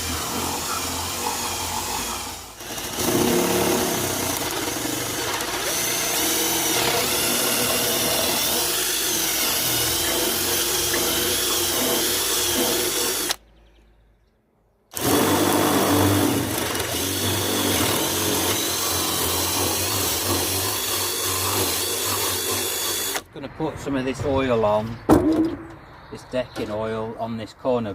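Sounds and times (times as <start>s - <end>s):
electric drill running under load: 0.0s - 13.4s, 14.9s - 23.2s.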